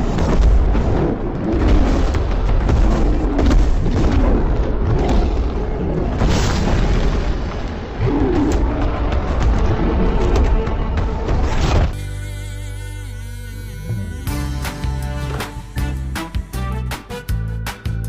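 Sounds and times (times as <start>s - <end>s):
low rumble: 0.0s - 15.3s
background music: 8.0s - 18.0s.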